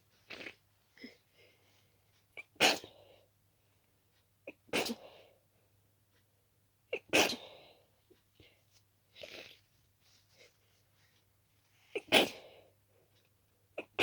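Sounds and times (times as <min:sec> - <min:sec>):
person sneezing: 0:07.0 - 0:07.5, 0:12.0 - 0:12.6.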